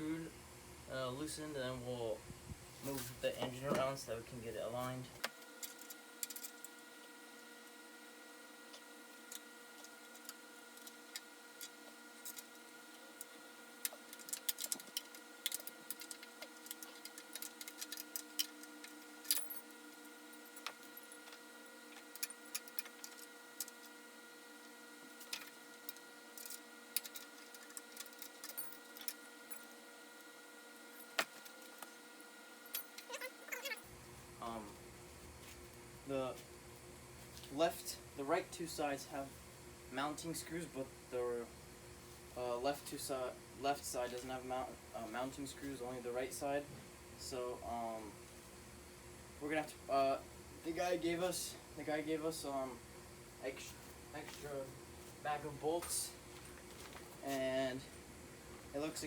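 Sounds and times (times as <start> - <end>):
faint steady hum: 0.0 - 59.0.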